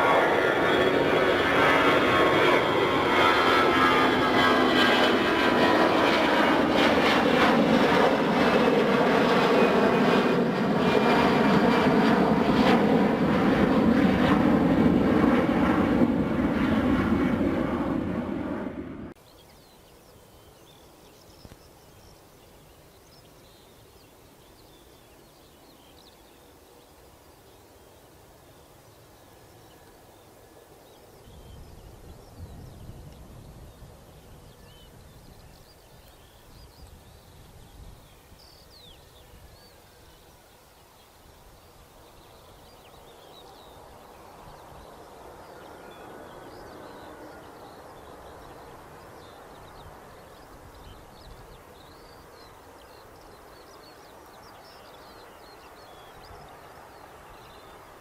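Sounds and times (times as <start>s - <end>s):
jet engines whining: 0.0s - 19.2s.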